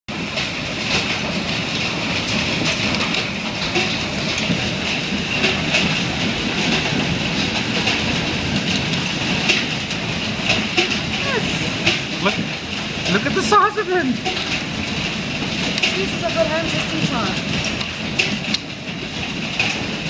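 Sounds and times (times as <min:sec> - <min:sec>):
hail striking hard surfaces: 0:00.1 - 0:20.0.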